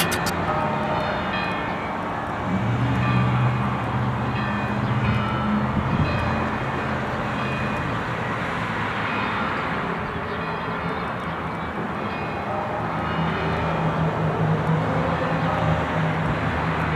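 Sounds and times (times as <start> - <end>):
street noise: 0.0 - 16.9
church bells ringing: 0.4 - 13.9.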